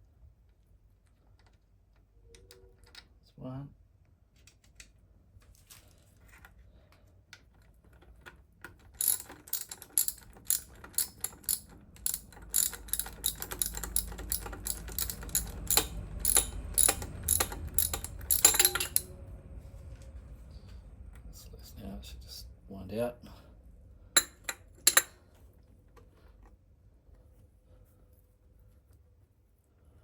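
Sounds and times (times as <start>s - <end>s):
socket ratchet clicking: 9.0s - 19.1s, 24.2s - 25.2s.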